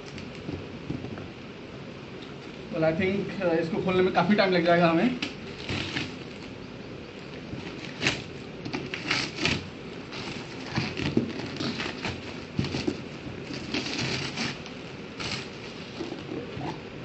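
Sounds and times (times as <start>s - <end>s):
packaging rustling and crinkling: 5.2s - 6.6s, 7.4s - 16.8s.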